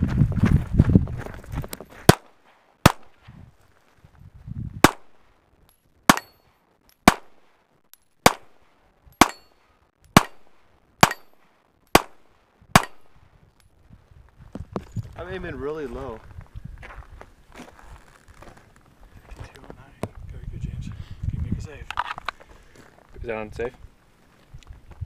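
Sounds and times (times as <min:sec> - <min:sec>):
rifle firing single shots: 0:02.1 - 0:03.2, 0:04.8 - 0:05.2, 0:06.0 - 0:06.4, 0:07.0 - 0:07.6, 0:08.2 - 0:13.2.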